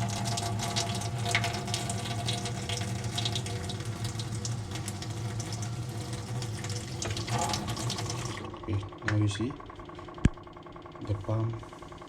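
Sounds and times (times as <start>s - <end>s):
water trickling through filter: 0.0s - 8.8s
booster pump humming: 0.0s - 12.0s.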